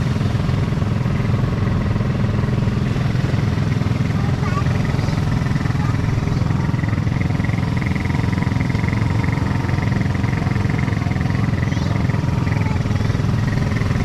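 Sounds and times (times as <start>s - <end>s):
small vehicle engine running: 0.0s - 14.0s.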